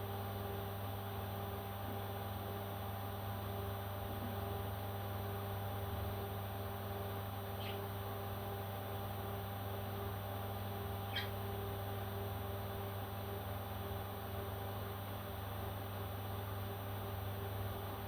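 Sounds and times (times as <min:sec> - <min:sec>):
baby parrot squeaking: 0:11.1 - 0:11.4.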